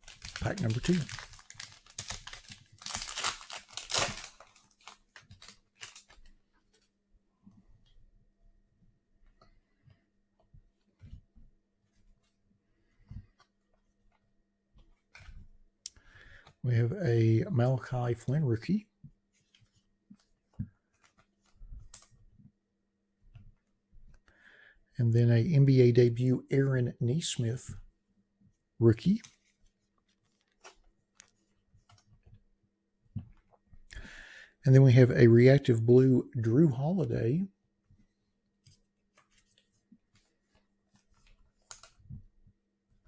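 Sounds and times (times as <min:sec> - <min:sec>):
wrapper tearing and crinkling: 0:00.0 - 0:06.3
cards ticking: 0:00.0 - 0:06.9, 0:38.6 - 0:42.0.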